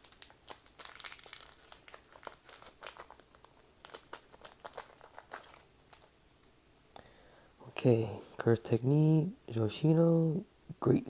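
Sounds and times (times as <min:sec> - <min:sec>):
wrapper crinkling: 0:00.0 - 0:06.2.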